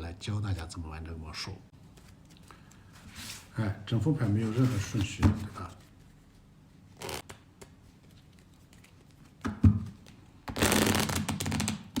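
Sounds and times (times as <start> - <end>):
playing cards shuffling: 4.2 - 12.0.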